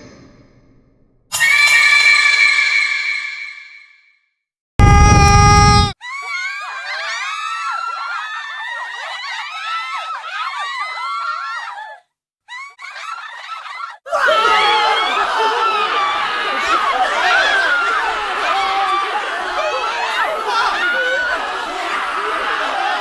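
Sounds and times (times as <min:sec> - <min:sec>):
high voices screaming: 0:01.3 - 0:03.7, 0:04.8 - 0:12.0, 0:12.6 - 0:23.0
loud distorted blast: 0:04.8 - 0:06.0
crowd chatter and laughter: 0:14.4 - 0:23.0.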